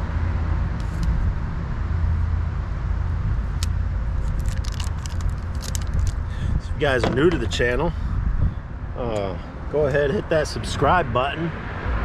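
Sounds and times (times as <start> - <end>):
steady low rumble: 0.0 - 12.0
plastic packaging crackling: 4.2 - 6.2.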